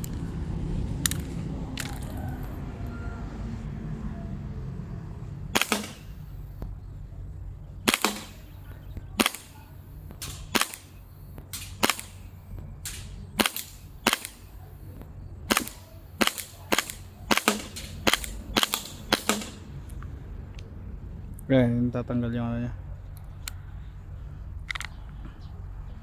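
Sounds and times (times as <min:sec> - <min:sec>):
airsoft pistol shots: 0:05.5 - 0:06.4, 0:07.8 - 0:19.7
faint clicks: 0:07.9 - 0:20.7, 0:23.1 - 0:23.7, 0:24.6 - 0:25.4.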